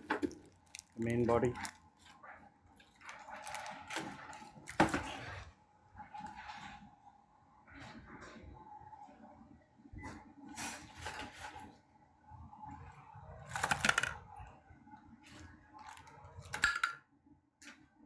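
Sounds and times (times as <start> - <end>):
packaging rustling: 0.0 - 2.2, 2.8 - 5.0.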